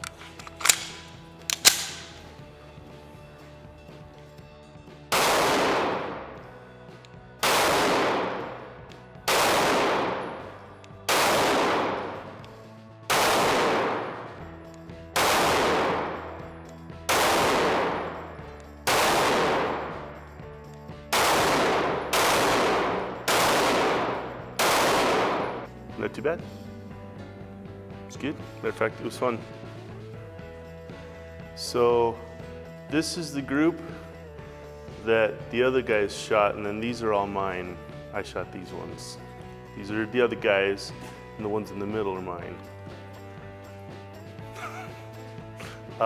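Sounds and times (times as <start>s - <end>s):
pistol shots with echo: 0.6s - 2.2s, 5.1s - 6.4s, 7.4s - 12.4s, 13.1s - 14.5s, 15.2s - 20.2s, 21.1s - 25.7s.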